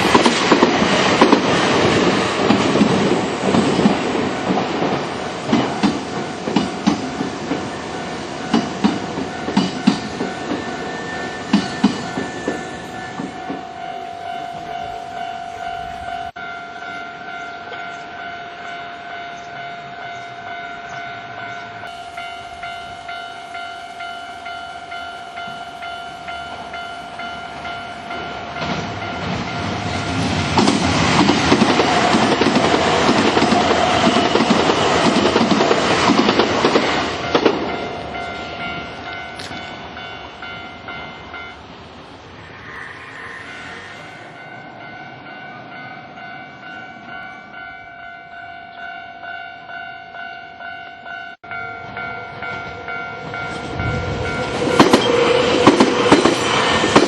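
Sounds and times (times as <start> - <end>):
train wheels clacking on rails: 0.0 - 14.9, 22.2 - 41.0, 52.4 - 57.0
crossing warning bell ringing: 0.0 - 30.4, 31.5 - 41.8, 42.7 - 57.0
train running noise: 0.0 - 57.0.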